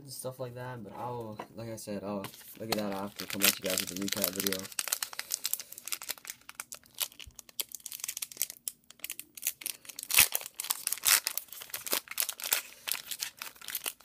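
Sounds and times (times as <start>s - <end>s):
cards being handled: 2.2s - 6.2s
card wrappers tearing and crinkling: 2.3s - 14.0s.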